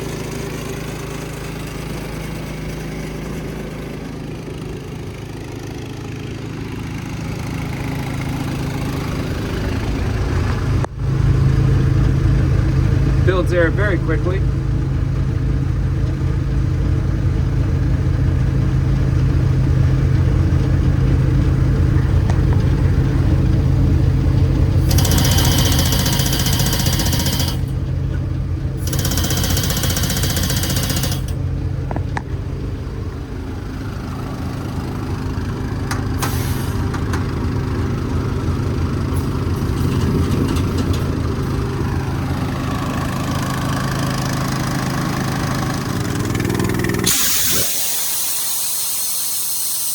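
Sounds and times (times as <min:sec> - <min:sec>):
air compressor engine running: 0:00.0 - 0:15.8, 0:18.3 - 0:49.9
compressed air hissing: 0:36.2 - 0:36.9, 0:47.0 - 0:49.9.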